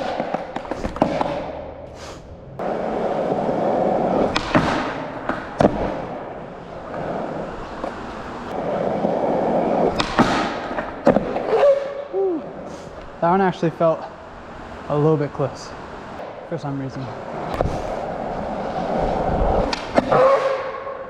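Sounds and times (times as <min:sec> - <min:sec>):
skateboard clacks: 0:00.0 - 0:01.8, 0:02.6 - 0:06.2, 0:06.9 - 0:12.0
skateboard wheels rolling on pavement: 0:00.0 - 0:21.0.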